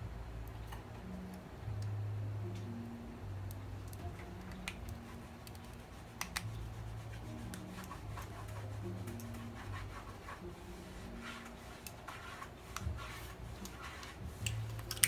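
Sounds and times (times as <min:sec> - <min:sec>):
low background hum: 0:00.0 - 0:15.0
small sharp clicks of parts: 0:14.4 - 0:15.0.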